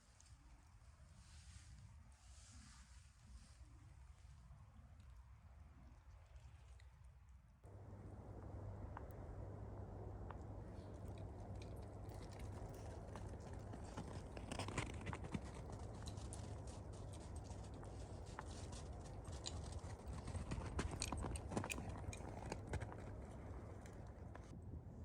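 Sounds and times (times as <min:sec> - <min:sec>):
steady low rumble: 0:07.7 - 0:25.0.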